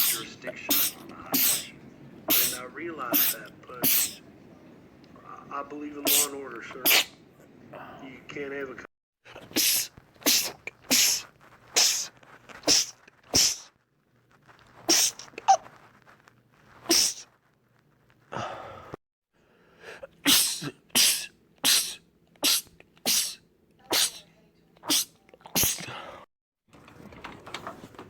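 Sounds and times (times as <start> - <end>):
man sneezing: 0.0 - 4.2, 6.0 - 7.2, 9.4 - 11.2, 11.8 - 13.7, 14.9 - 15.6, 16.9 - 17.2, 20.0 - 24.2, 24.8 - 26.1.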